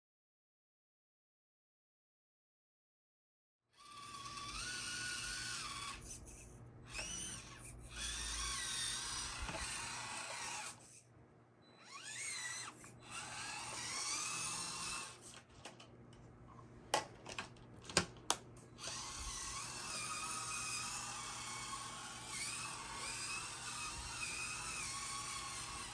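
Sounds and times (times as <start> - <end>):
electric motor whining: 3.8 - 11.0, 11.7 - 15.5, 18.8 - 25.9.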